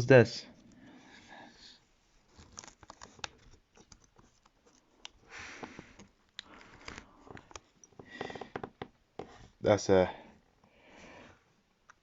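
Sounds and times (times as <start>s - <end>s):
small parts clicking and tapping: 2.4s - 8.9s.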